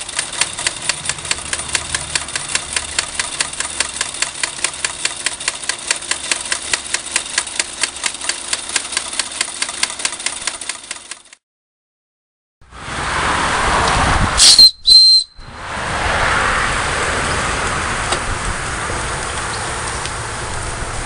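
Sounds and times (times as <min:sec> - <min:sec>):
steam whistle toots: 0:14.4 - 0:15.5.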